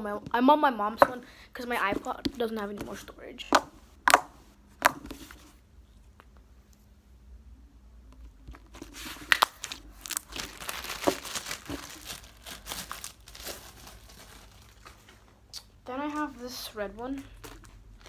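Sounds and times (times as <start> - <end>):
plastic bag crinkling: 8.6 - 15.4.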